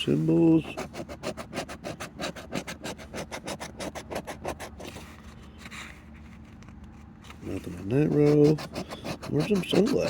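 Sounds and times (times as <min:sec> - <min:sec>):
lottery ticket being scratched: 0:00.0 - 0:05.0, 0:07.3 - 0:10.0.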